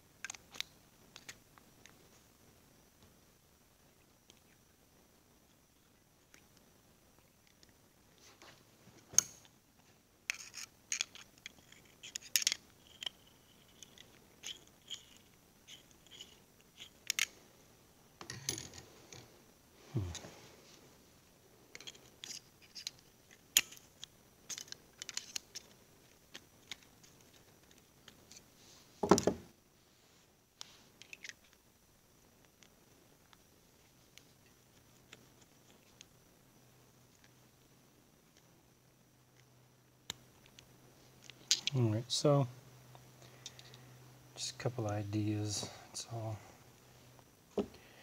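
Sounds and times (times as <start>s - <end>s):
small metal parts clicking and tapping: 10.3s - 17.3s, 18.2s - 19.3s, 21.7s - 28.4s.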